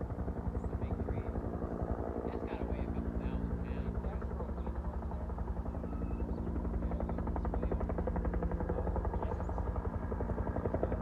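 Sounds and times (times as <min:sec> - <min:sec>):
helicopter rotor chopping: 0:00.0 - 0:11.0.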